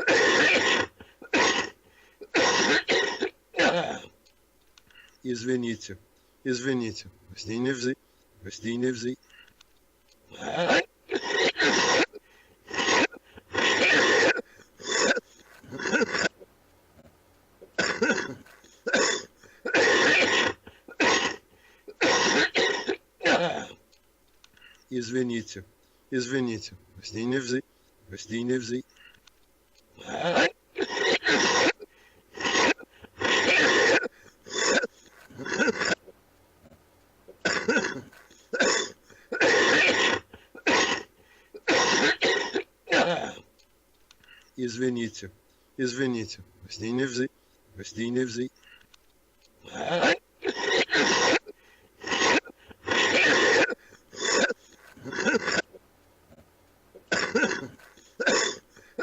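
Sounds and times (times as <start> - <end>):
man coughing harshly: 0.0 - 4.1, 10.3 - 16.3, 17.7 - 23.8, 30.0 - 36.0, 37.4 - 43.5, 49.6 - 55.7, 57.1 - 59.0.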